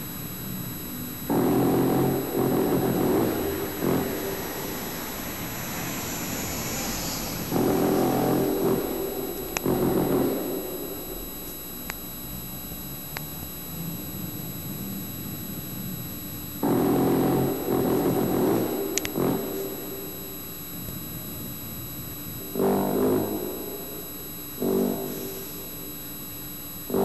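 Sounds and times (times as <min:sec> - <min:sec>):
deep brass-like horn blasts: 0:01.3 - 0:11.5
faint sharp ticks: 0:13.1 - 0:13.3.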